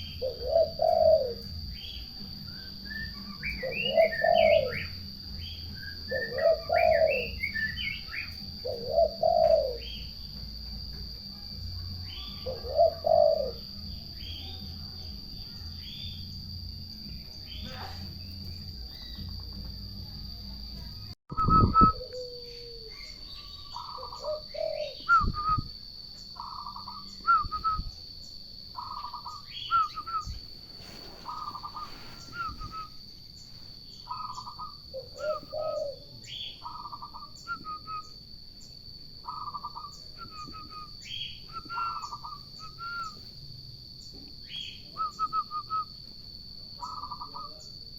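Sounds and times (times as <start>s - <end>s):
turtle doves cooing: 0.0s - 10.3s, 12.0s - 14.6s, 21.6s - 25.7s, 26.4s - 27.6s, 28.7s - 33.0s, 33.8s - 38.2s, 39.2s - 43.2s, 46.7s - 47.9s
birds chirping: 0.0s - 10.4s, 12.0s - 19.7s, 22.0s - 25.3s, 26.1s - 43.2s, 46.8s - 47.9s.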